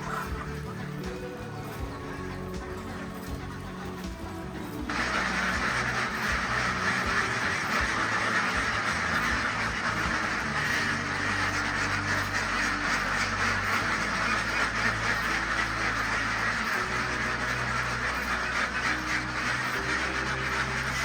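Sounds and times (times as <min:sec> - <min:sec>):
ducks quacking: 0:00.0 - 0:21.0.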